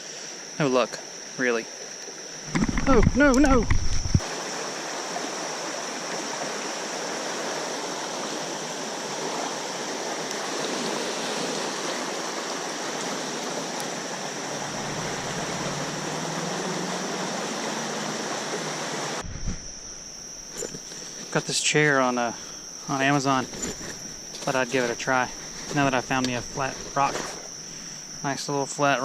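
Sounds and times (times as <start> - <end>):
river water rushing: 4.2 - 19.2.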